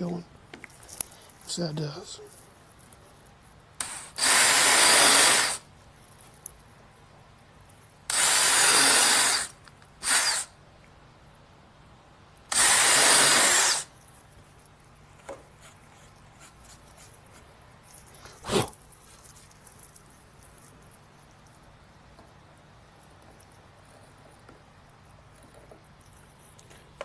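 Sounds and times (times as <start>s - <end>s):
power drill boring into wood: 3.8s - 5.7s, 8.1s - 10.5s, 12.5s - 13.9s.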